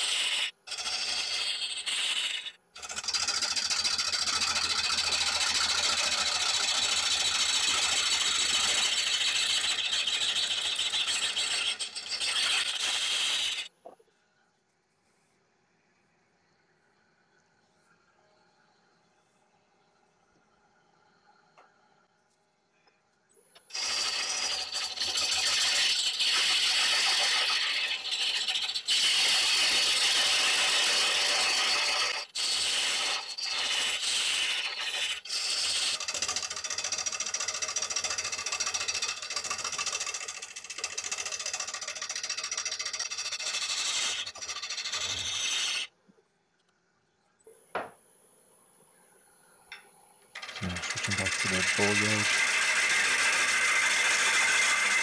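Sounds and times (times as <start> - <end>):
lathe tool scraping wood: 0.0 - 13.7, 23.7 - 45.9, 50.4 - 55.0.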